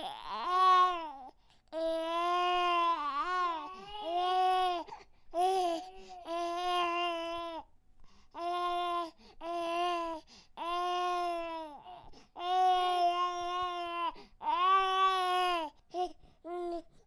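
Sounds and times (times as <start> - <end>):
baby crying: 0.0 - 7.6, 8.4 - 16.8.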